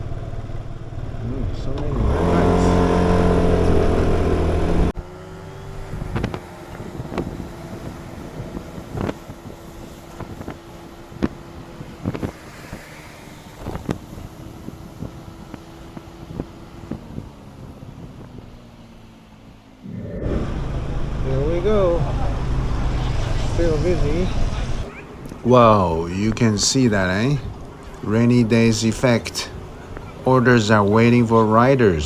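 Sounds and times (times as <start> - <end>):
motor scooter engine: 0.0 - 19.2, 19.8 - 26.0.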